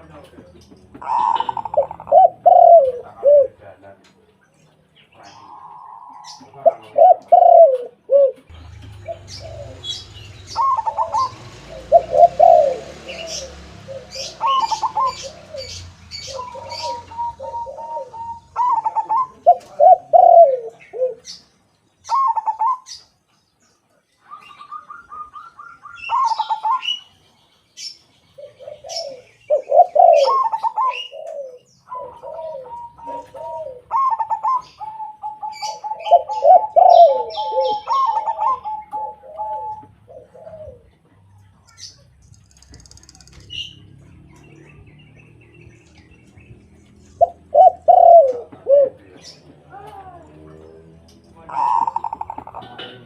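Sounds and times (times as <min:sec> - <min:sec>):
doves cooing: 0:00.0 - 0:04.1, 0:05.0 - 0:23.1, 0:24.2 - 0:27.2, 0:27.8 - 0:53.0.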